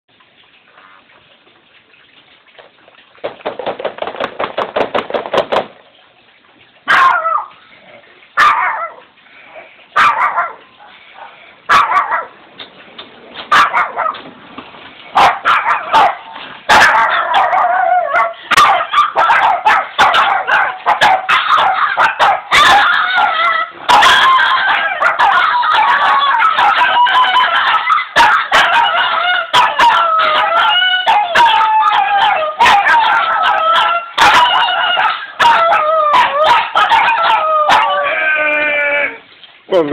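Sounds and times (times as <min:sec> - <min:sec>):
dog barking: 0:06.9 - 0:07.5, 0:08.4 - 0:09.0, 0:10.0 - 0:12.4, 0:13.5 - 0:14.2, 0:15.2 - 0:38.0
several dogs barking together: 0:06.9 - 0:07.5, 0:08.4 - 0:09.0, 0:10.0 - 0:12.4, 0:13.5 - 0:14.2, 0:15.1 - 0:38.1.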